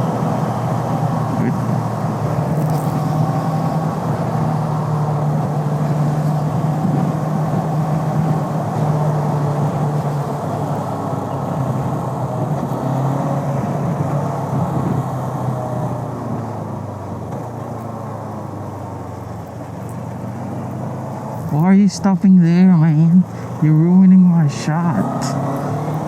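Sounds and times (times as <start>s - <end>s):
motorcycle engine running: 0.0s - 26.0s
wind and road noise: 0.0s - 26.0s.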